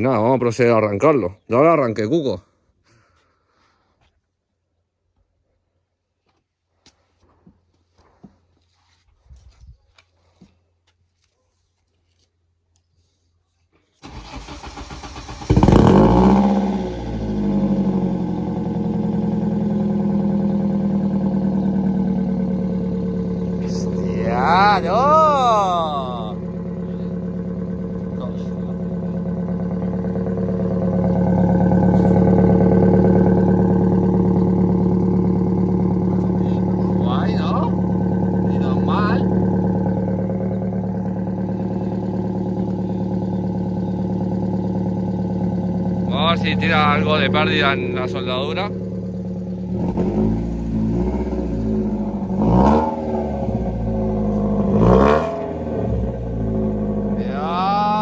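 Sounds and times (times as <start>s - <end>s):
car engine running: 14.1s - 58.0s.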